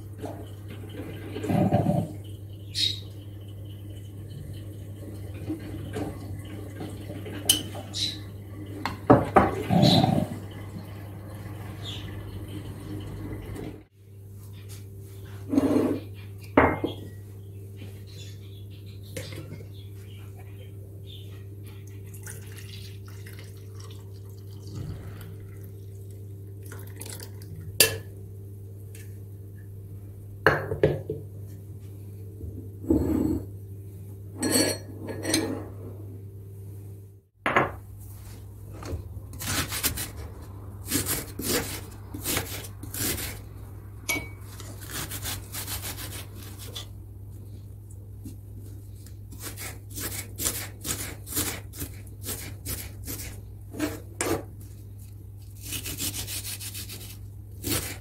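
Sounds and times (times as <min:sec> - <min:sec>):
low electric hum: 0:00.0 - 0:58.0
dishes and cutlery clinking: 0:07.4 - 0:07.8, 0:34.4 - 0:35.6, 0:44.1 - 0:44.5.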